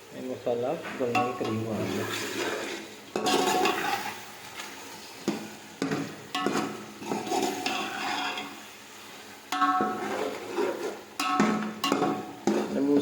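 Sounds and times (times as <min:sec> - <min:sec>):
masala frying: 0:00.0 - 0:13.0
spoon clanking against pot: 0:01.1 - 0:01.7, 0:05.3 - 0:08.6, 0:09.5 - 0:10.4, 0:11.2 - 0:13.0
metal spoon scraping pot: 0:01.2 - 0:04.3, 0:06.3 - 0:08.6, 0:09.6 - 0:13.0.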